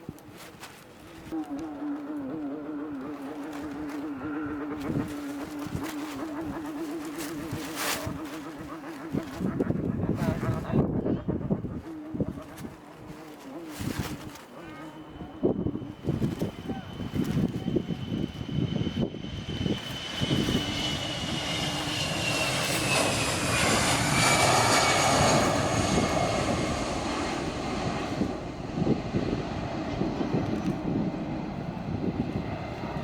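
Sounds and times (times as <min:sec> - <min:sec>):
airplane engine passing by: 0:00.0 - 0:33.0.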